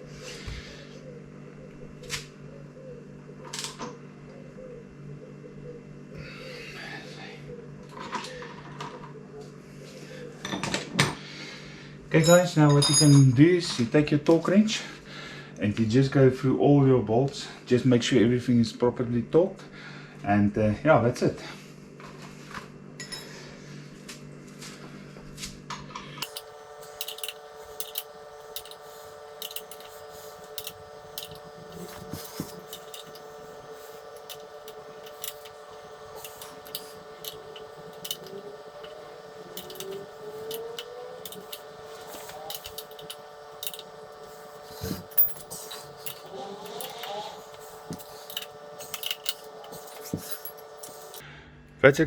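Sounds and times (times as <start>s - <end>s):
hand tools clicking on bolts: 26.2s - 51.2s
steady hum: 26.2s - 52.0s.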